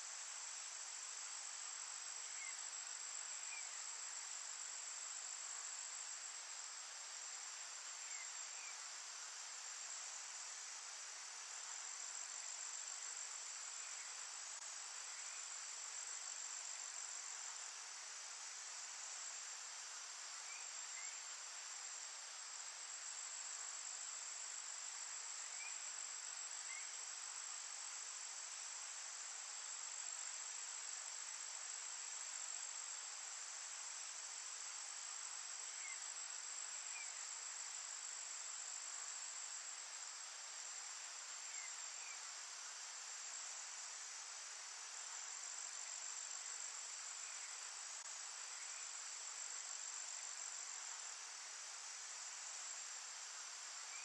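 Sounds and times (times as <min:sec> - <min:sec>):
crickets trilling: 0:00.1 - 0:54.0.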